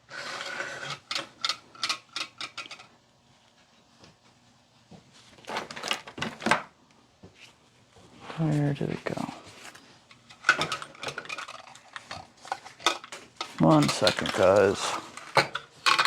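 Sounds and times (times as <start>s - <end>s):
rifle parts rattling and knocking: 10.4s - 16.0s.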